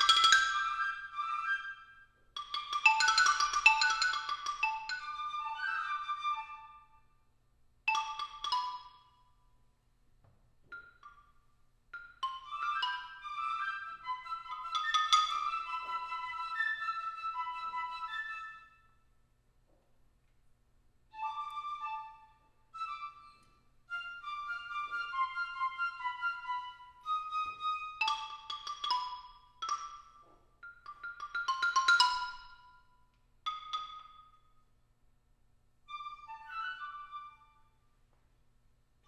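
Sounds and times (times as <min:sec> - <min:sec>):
mallet percussion: 0:00.0 - 0:01.6, 0:02.3 - 0:06.0, 0:07.9 - 0:09.4, 0:10.6 - 0:17.0, 0:25.1 - 0:34.5
piccolo notes: 0:00.0 - 0:02.2, 0:12.0 - 0:19.1, 0:21.2 - 0:29.2, 0:35.9 - 0:37.8.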